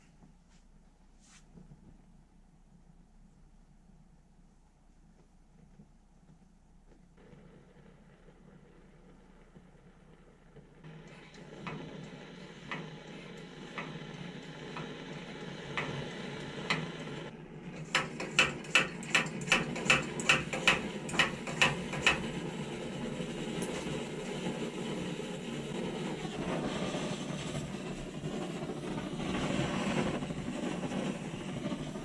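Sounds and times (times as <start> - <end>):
blowtorch rushing: 7.2 - 32.0
hammer tapping a punch: 17.8 - 22.3.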